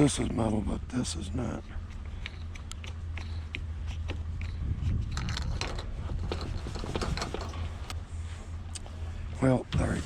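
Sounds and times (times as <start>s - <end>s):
steady low rumble: 0.0s - 10.0s.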